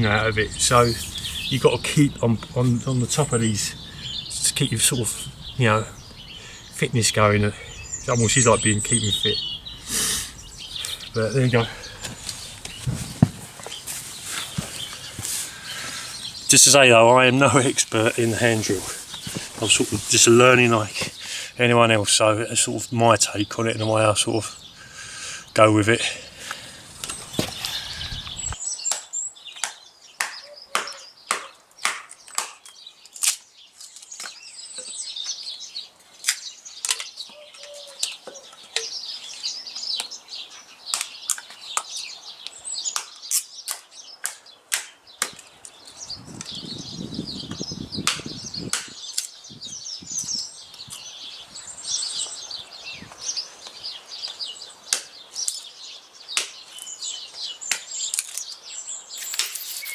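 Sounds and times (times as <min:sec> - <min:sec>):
small birds chirping: 0:00.0 - 0:59.9
palms rubbing wooden spindle: 0:07.4 - 0:16.2, 0:59.2 - 0:59.9.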